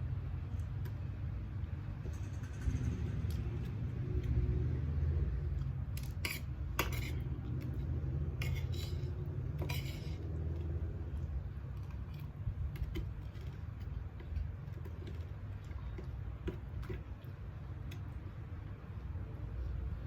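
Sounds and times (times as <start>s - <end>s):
cutlery scraping a plate: 6.0s - 10.4s.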